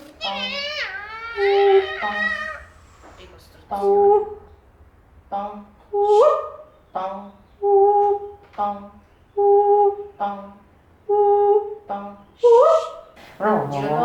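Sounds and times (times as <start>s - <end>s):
person singing wordless notes: 5.3s - 14.0s.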